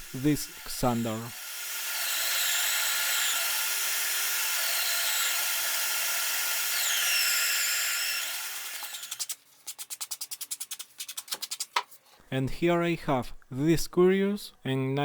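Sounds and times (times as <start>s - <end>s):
disc sander grinding wood: 0.0s - 9.3s
electric drill whine: 0.0s - 9.3s.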